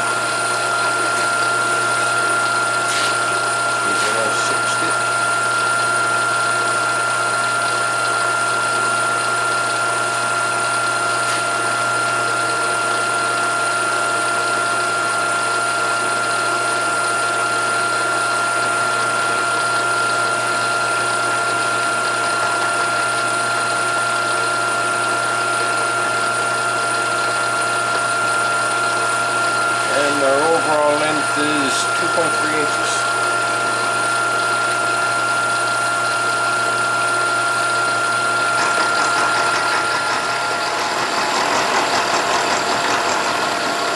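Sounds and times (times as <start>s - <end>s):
milling machine whine: 0.0s - 43.9s.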